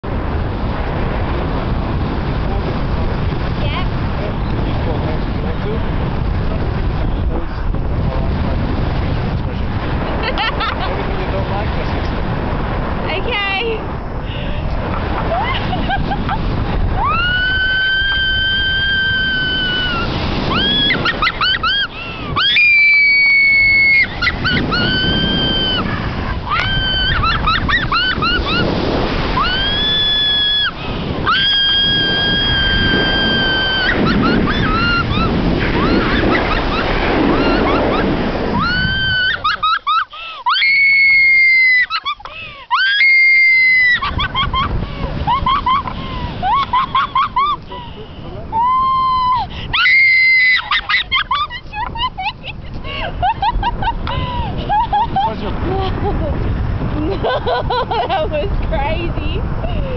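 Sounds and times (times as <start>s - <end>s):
wind rushing across microphone: 0.0s - 59.9s
person squealing: 26.5s - 28.7s, 29.4s - 36.2s, 38.6s - 44.1s.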